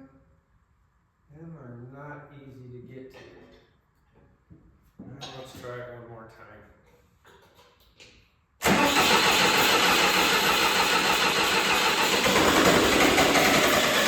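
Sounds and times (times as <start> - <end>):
diesel engine running: 8.6 - 14.0
starter cranking diesel engine: 8.6 - 14.0.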